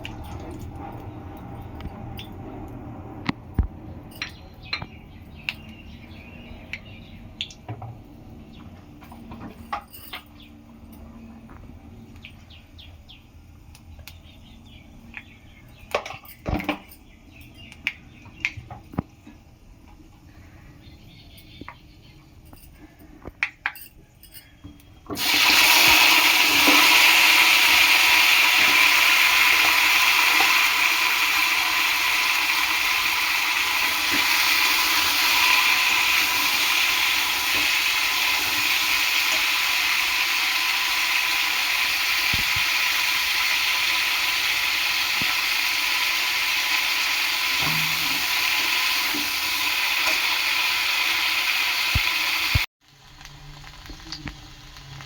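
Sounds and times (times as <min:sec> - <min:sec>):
loud steady hiss: 0:25.2 - 0:55.0.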